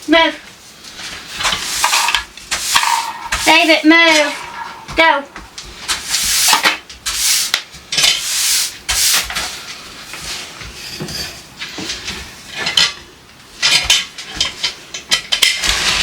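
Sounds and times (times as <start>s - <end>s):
rubbing and scraping strokes: 1.0s - 11.5s
dishes and utensils clinking: 1.4s - 5.6s.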